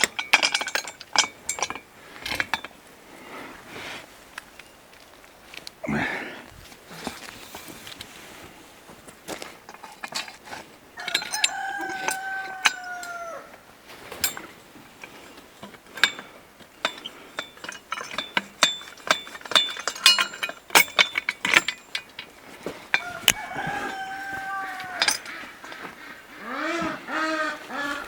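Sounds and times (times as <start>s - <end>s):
rooster crowing: 11.0s - 13.7s, 23.0s - 25.6s, 26.4s - 28.0s.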